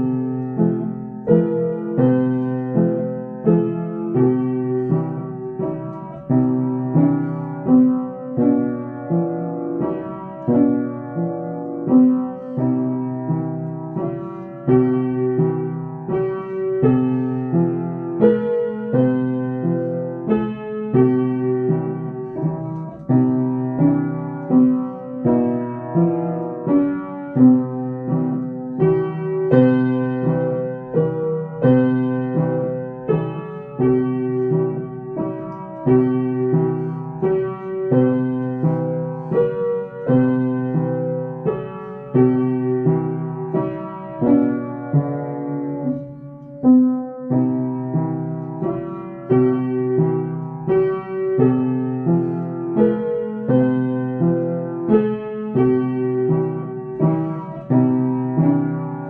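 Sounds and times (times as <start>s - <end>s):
piano chords: 0.0s - 59.0s.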